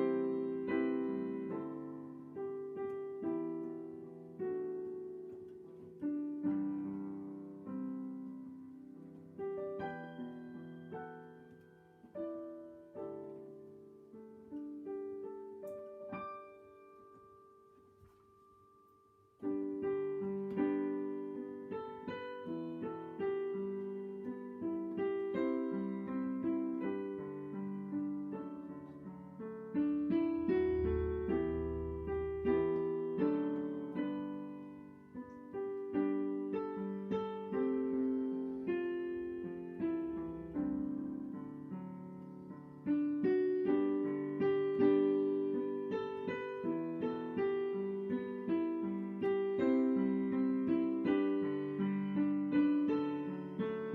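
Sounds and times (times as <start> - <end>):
piano playing slow chords: 0.0 - 53.9
low piano bass note: 30.2 - 33.9.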